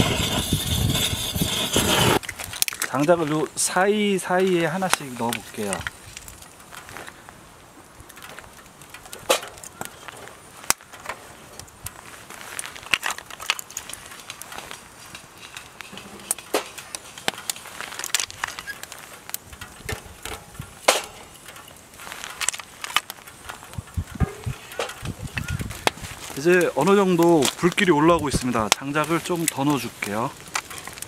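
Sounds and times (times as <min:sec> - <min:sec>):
firewood popping and snapping: 0:00.0 - 0:31.0
wood fire crackling: 0:00.0 - 0:31.0.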